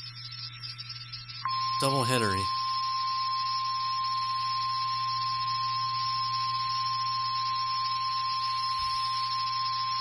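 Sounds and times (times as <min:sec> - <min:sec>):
steady warning tone: 0:00.0 - 0:10.0.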